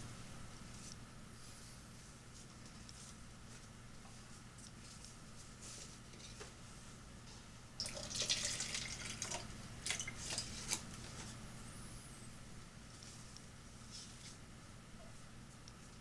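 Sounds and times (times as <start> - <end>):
water pouring onto plants: 7.8 - 10.1.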